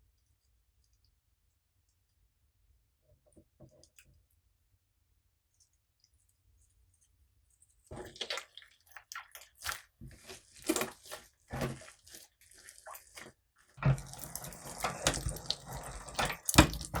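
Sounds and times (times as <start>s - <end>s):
slime squelching by hand: 7.7s - 17.0s.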